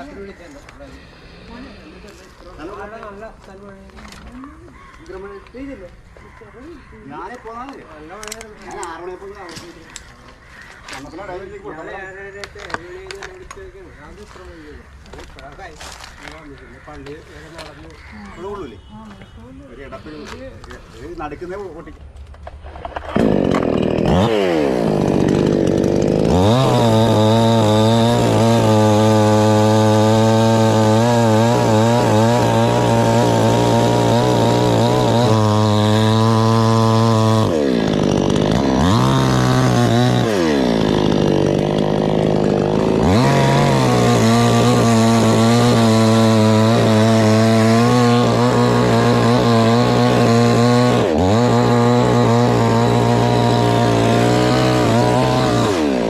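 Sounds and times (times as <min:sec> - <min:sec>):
chainsaw cutting wood: 0:22.3 - 0:56.0.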